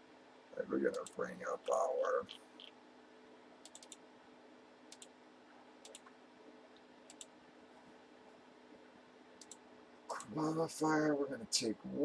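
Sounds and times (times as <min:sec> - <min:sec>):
faint computer clicks: 0:03.6 - 0:04.0, 0:04.9 - 0:05.2, 0:05.8 - 0:07.4, 0:09.4 - 0:10.4.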